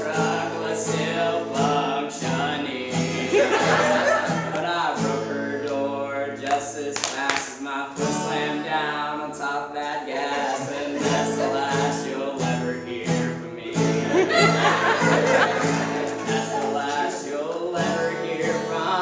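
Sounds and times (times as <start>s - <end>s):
guitar chords: 0.0s - 6.6s, 10.5s - 19.0s
person singing: 0.0s - 19.0s.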